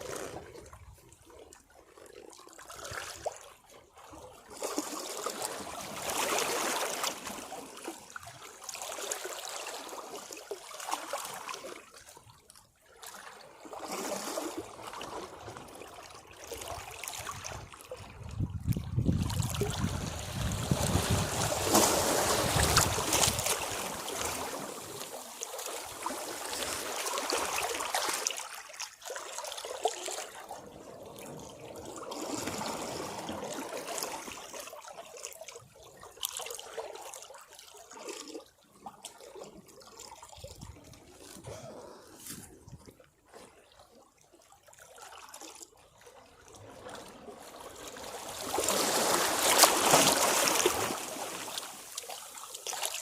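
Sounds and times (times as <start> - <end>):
sea waves breaking against rocks: 16.7 - 28.6, 29.4 - 34.4, 46.6 - 53.0.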